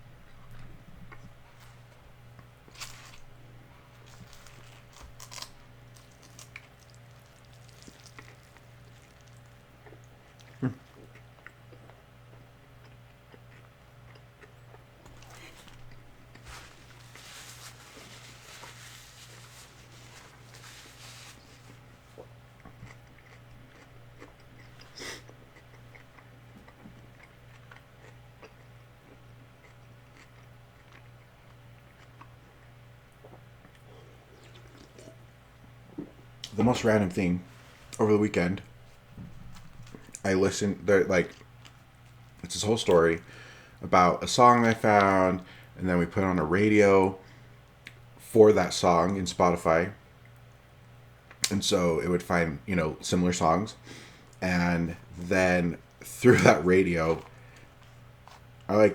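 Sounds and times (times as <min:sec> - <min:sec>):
steady low hum: 0:00.0 - 0:58.9
chewing and crunching food: 0:00.1 - 0:43.9, 0:54.0 - 0:58.9
crunchy bite: 0:04.0 - 0:11.2.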